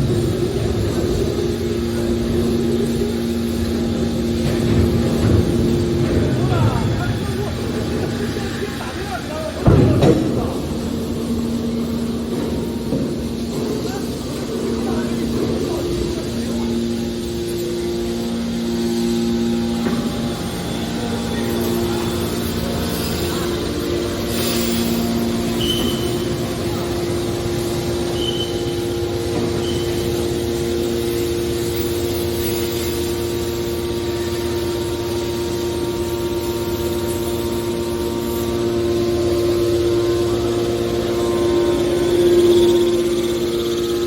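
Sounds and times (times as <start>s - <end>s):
hydraulic baler humming: 0.0s - 44.0s
high squeaks: 20.8s - 31.0s.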